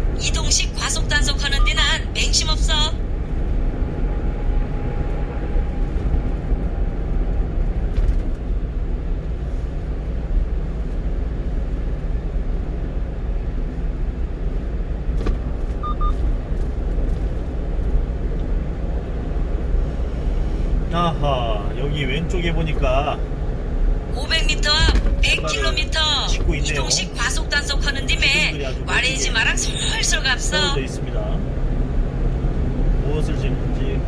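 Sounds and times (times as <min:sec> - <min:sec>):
truck engine and tyre rumble: 0:00.0 - 0:34.0
short double beep: 0:15.8 - 0:16.2.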